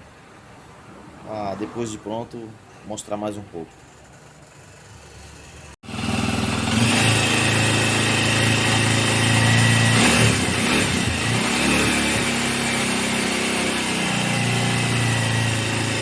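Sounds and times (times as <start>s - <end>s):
motorcycle engine starting and idling: 3.8s - 16.0s.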